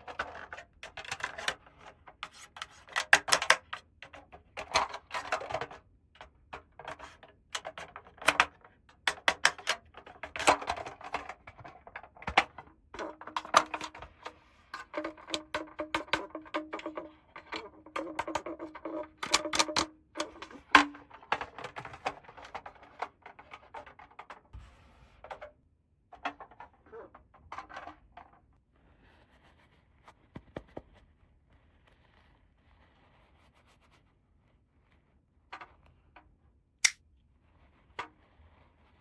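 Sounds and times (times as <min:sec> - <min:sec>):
plastic toy parts clicking: 0:06.6 - 0:14.0, 0:14.8 - 0:24.3.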